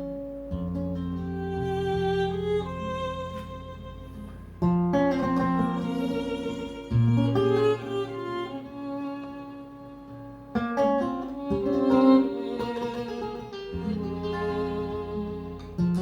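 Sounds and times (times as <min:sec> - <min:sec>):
held string chords: 0:00.0 - 0:16.0
plucked guitar notes: 0:00.0 - 0:16.0.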